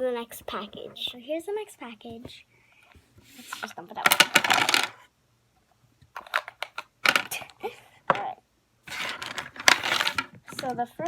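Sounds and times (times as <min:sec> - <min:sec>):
small plastic items clicking and rattling: 0:03.5 - 0:05.0, 0:06.1 - 0:08.3, 0:08.9 - 0:10.9
packaging rustling: 0:08.9 - 0:10.7.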